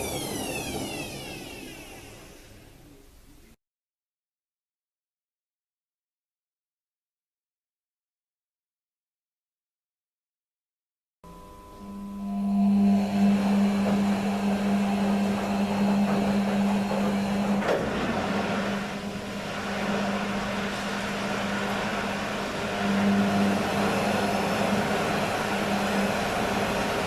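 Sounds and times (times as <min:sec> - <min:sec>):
washing machine electric hum: 0:00.0 - 0:03.6, 0:11.2 - 0:27.0
drum and water noise: 0:13.8 - 0:27.0.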